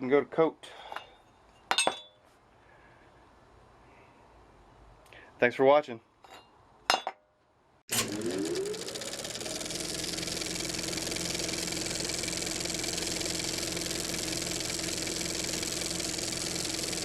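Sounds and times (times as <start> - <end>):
minibike engine idling: 8.0 - 17.0.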